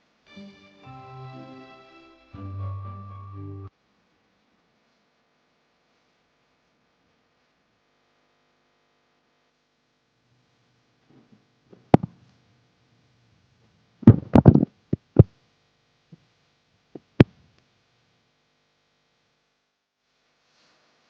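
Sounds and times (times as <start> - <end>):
knocks of small hard objects: 14.1 - 15.3.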